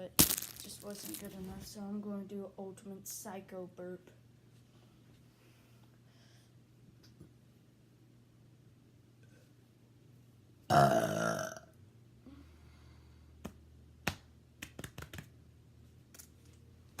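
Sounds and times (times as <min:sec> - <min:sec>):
person burping: 0:10.7 - 0:11.7.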